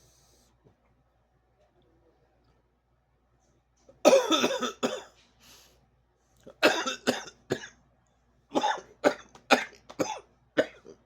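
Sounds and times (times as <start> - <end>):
man coughing: 4.0 - 5.1, 6.6 - 7.7, 8.6 - 11.0.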